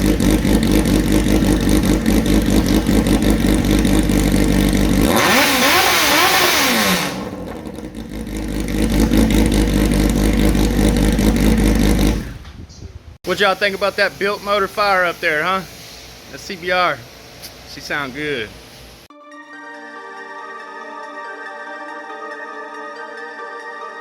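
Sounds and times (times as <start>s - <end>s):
motorcycle engine revving: 0.0s - 12.6s.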